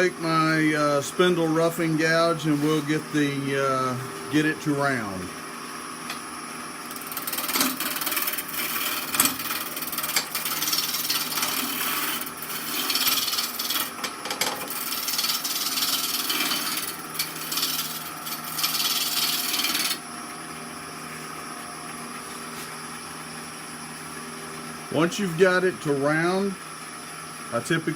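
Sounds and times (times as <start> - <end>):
lathe motor hum: 6.0 - 21.4
gouge scraping wood on lathe: 6.9 - 14.0, 14.6 - 20.0.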